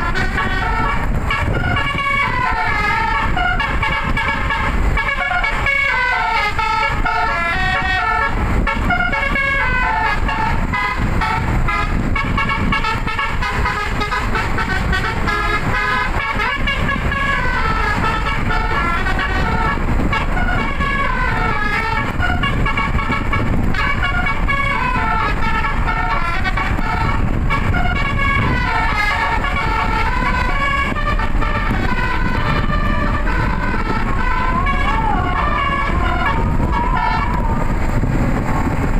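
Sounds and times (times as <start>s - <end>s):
multi-tone bus horn tune: 0.0s - 38.2s
steady low rumble: 0.0s - 38.9s.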